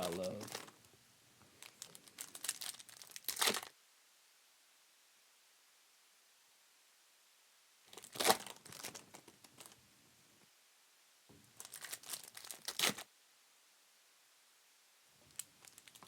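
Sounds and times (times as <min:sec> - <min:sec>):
plastic wrappers crinkling and tearing: 0:00.0 - 0:00.8, 0:01.6 - 0:03.7, 0:07.9 - 0:09.8, 0:11.6 - 0:13.1, 0:15.3 - 0:16.0.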